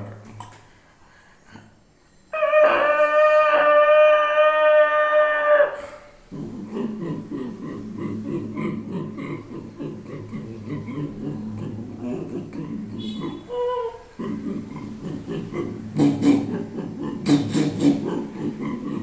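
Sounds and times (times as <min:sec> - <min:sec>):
man imitating train chugging: 0:05.8 - 0:19.0.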